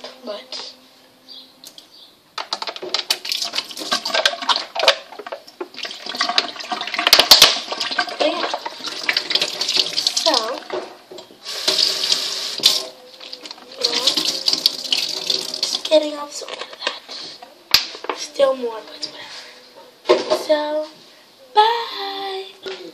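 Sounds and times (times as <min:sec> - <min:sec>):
water sloshing in plastic bottle: 0:02.6 - 0:10.9, 0:12.6 - 0:17.0.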